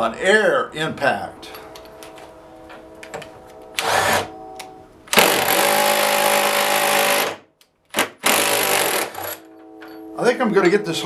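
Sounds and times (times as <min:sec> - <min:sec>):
cordless impact driver running: 0:03.8 - 0:04.3, 0:05.1 - 0:07.4, 0:08.2 - 0:09.3.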